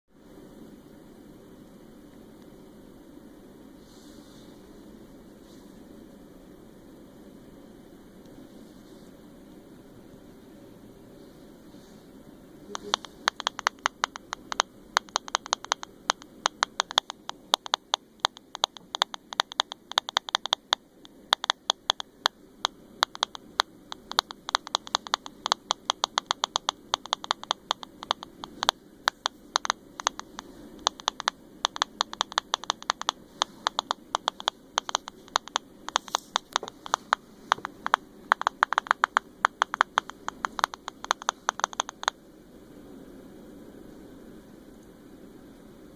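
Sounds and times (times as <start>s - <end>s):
phone sharp clicking: 12.7s - 42.2s.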